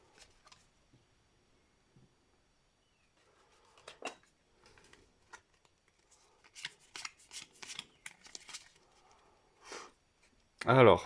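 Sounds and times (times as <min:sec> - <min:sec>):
foil wrapper and cards rustling: 0:04.6 - 0:09.0.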